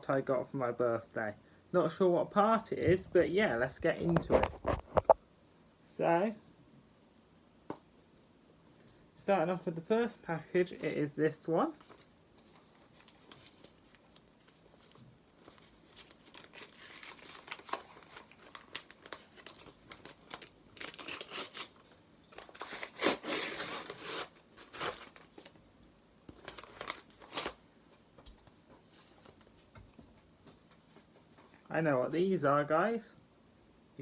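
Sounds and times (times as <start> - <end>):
parcel packaging tearing and crinkling: 11.7 - 25.6, 26.3 - 27.6.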